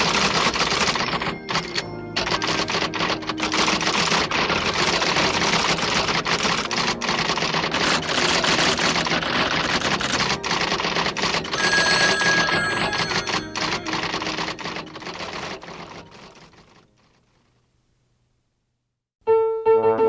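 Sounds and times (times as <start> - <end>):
typewriter bell ringing: 0.0 - 6.7, 7.4 - 16.4
typewriter keys clattering: 0.0 - 16.9.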